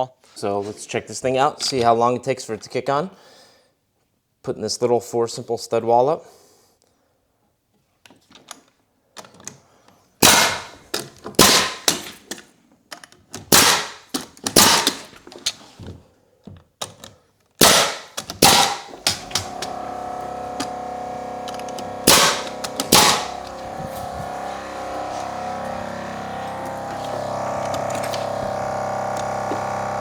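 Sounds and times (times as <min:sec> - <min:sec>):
nail gun shots into wood: 0:10.2 - 0:12.3, 0:13.4 - 0:15.2, 0:17.6 - 0:19.8, 0:21.5 - 0:23.6
air compressor humming: 0:10.3 - 0:10.8, 0:17.6 - 0:30.0.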